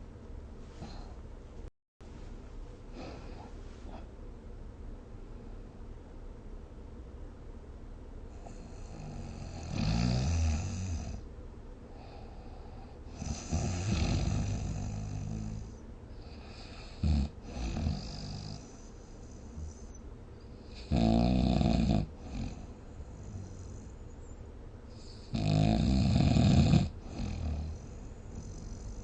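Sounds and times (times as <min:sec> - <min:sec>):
person snoring: 0:08.4 - 0:11.2, 0:13.1 - 0:18.8, 0:20.7 - 0:23.9, 0:25.0 - 0:29.0.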